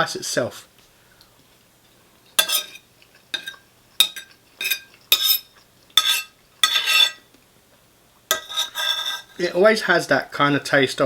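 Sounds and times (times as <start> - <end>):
cutlery scraping rice in a dish: 2.4 - 7.3, 8.3 - 9.6.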